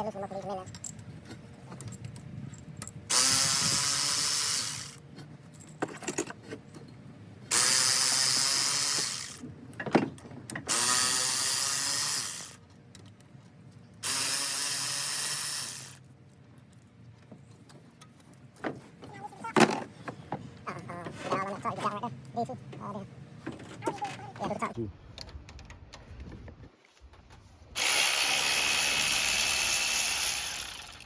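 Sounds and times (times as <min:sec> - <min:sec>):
power tool bursts: 0:03.1 - 0:05.0, 0:07.5 - 0:09.4, 0:27.8 - 0:31.0.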